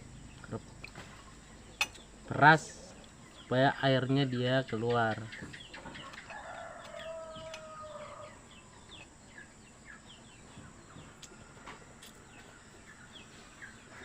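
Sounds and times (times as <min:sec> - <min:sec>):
chicken drawn-out call: 0:06.0 - 0:08.5.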